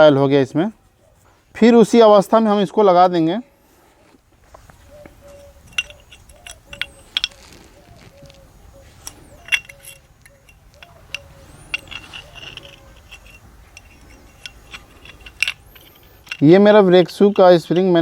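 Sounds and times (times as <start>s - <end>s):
metal spring clicking and clinking: 5.2s - 18.0s.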